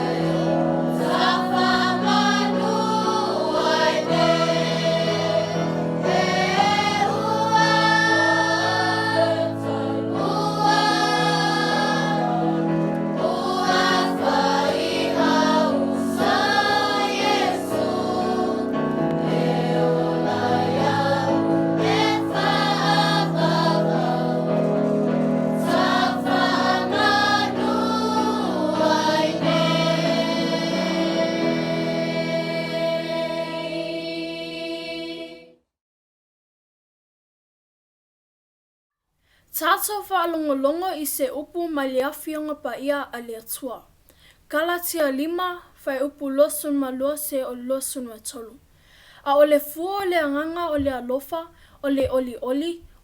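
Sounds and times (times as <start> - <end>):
held accompaniment chords: 0.0 - 35.2
choir singing a hymn: 0.0 - 35.6.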